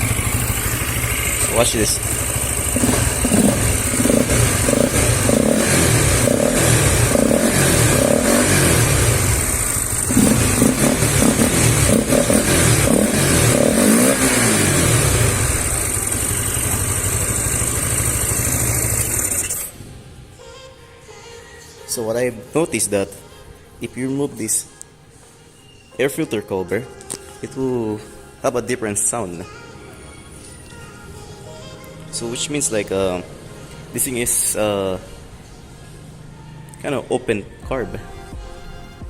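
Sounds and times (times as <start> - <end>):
motorcycle engine revving and idling: 0.0 - 19.8.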